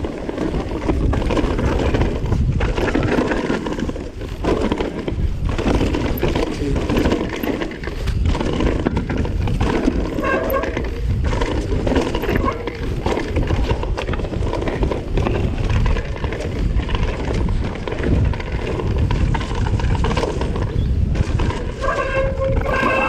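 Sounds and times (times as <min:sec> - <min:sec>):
bike frame rattling: 0:00.0 - 0:23.0
bike tyres rumbling on rough trail: 0:00.0 - 0:23.0
disc brakes squealing: 0:10.1 - 0:11.0, 0:21.7 - 0:23.0.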